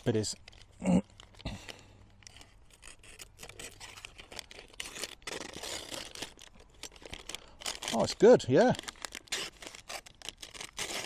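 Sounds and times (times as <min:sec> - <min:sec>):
knife slicing paper: 0:08.9 - 0:11.0.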